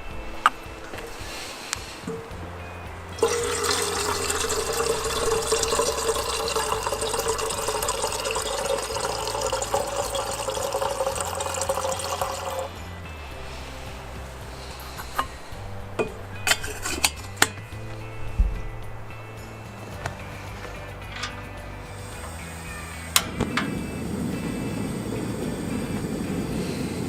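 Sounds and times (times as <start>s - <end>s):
background music: 0.0s - 27.0s
water being poured: 3.2s - 12.8s.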